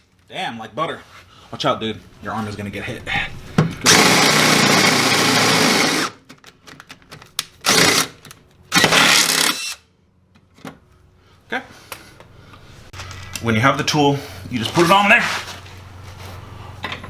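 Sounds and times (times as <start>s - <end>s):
power drill boring sheet metal: 3.8s - 6.2s, 8.7s - 9.8s.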